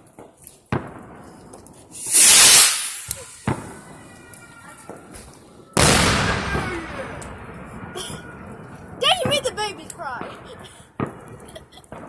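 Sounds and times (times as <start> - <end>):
small firework pops: 0.0 - 7.4, 8.1 - 12.0
firework bangs: 0.2 - 12.0
firework hissing burst: 1.9 - 3.8.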